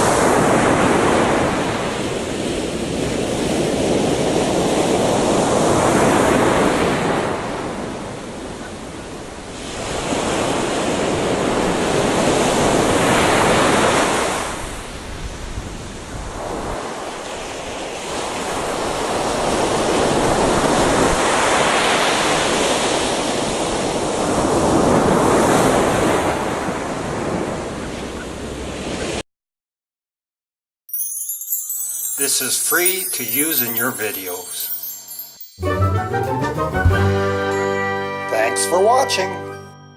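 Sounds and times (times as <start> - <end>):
ocean waves washing onto beach: 0.0 - 29.2.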